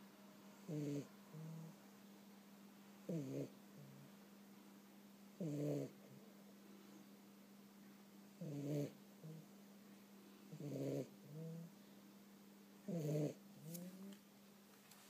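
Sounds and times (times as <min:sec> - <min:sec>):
faint steady hum: 0:00.0 - 0:15.0
cat snoring: 0:00.6 - 0:01.8, 0:03.0 - 0:04.1, 0:05.4 - 0:06.0, 0:08.4 - 0:09.5, 0:10.5 - 0:11.7, 0:12.9 - 0:14.1.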